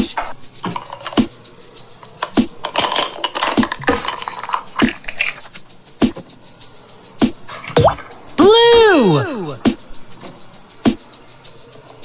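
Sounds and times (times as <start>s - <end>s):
plastic eggs clicking and tapping: 0.6s - 1.4s, 2.0s - 6.3s.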